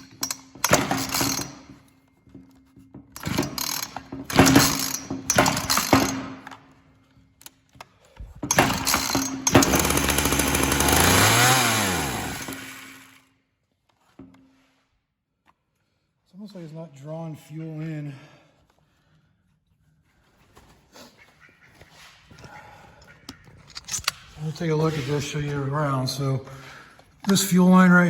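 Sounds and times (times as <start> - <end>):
chainsaw pull-start: 0.0 - 1.9, 3.1 - 6.6, 8.5 - 13.3
chainsaw engine running: 8.5 - 13.3.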